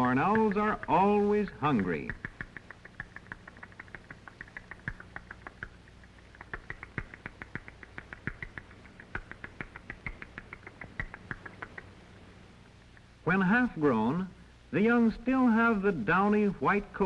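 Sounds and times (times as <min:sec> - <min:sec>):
owl chicks squeaky chirps: 0:00.2 - 0:12.0
sharp clicks: 0:01.8 - 0:12.0.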